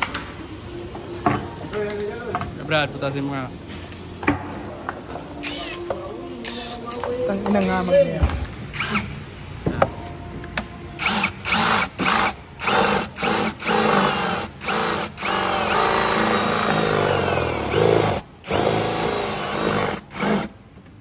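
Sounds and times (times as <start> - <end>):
power drill boring into wood: 11.0 - 20.5.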